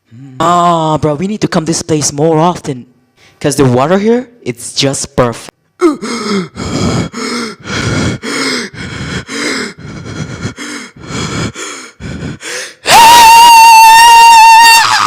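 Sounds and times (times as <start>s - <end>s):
person gasping and grunting: 5.8s - 12.9s
loud high-pitched tone: 12.9s - 14.6s.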